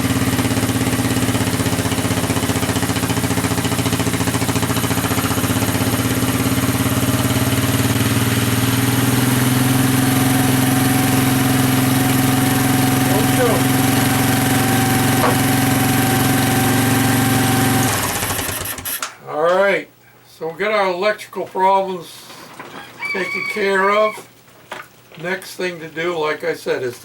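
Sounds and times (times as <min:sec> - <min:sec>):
quad bike engine idling: 0:00.0 - 0:18.9.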